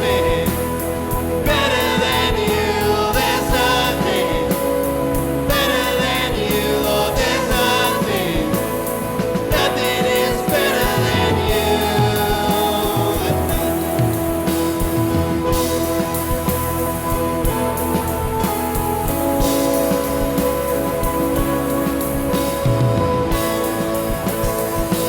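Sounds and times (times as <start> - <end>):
person singing: 0.0 - 15.6
band playing: 0.0 - 25.0.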